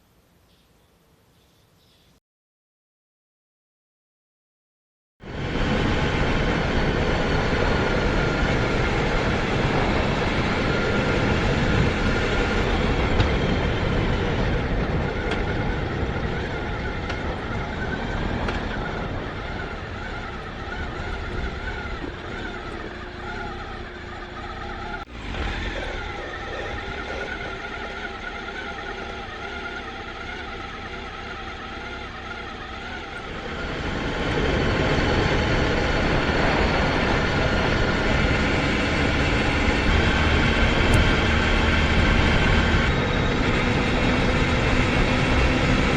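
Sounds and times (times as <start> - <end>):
motorcycle engine: 5.2 - 45.9
wind and road noise: 5.2 - 45.9.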